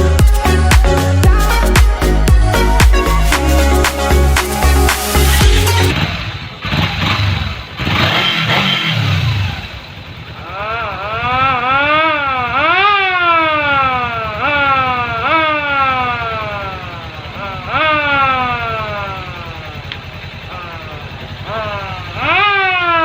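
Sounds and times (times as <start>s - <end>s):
dance music with heavy bass: 0.0s - 6.0s
electronic siren vehicle horn: 0.0s - 6.0s, 10.7s - 19.8s, 21.5s - 23.0s.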